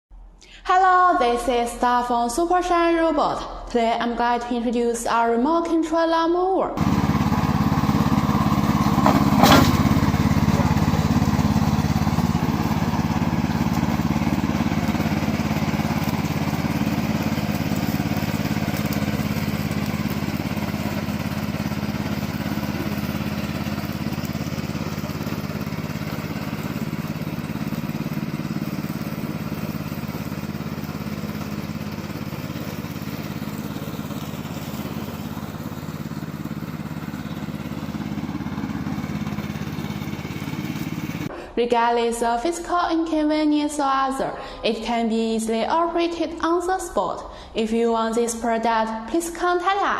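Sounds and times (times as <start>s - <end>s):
lawn mower engine running: 6.8s - 41.4s.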